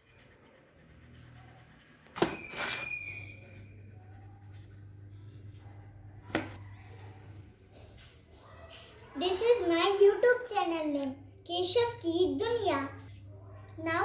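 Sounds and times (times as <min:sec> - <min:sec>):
stylus rubbing scrape: 0:00.0 - 0:06.6
steady low hum: 0:02.9 - 0:07.8.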